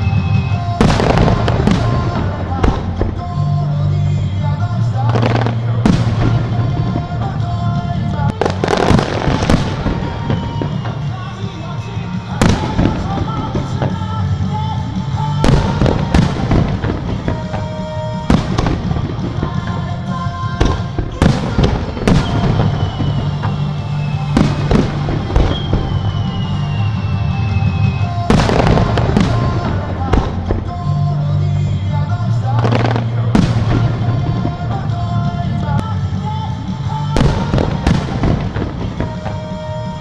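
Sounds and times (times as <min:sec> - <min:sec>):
falling firework whistles: 0:00.0 - 0:02.4, 0:08.3 - 0:30.0, 0:36.9 - 0:40.0
fireworks bursting: 0:00.0 - 0:40.0
music playing: 0:00.0 - 0:40.0.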